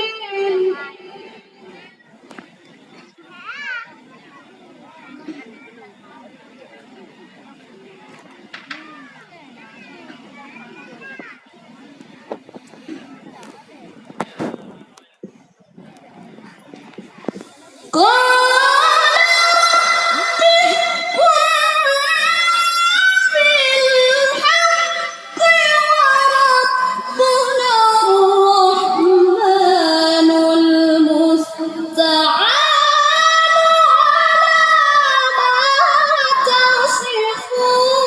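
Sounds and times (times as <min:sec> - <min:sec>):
person chanting melodic recitation: 0:18.0 - 0:38.0.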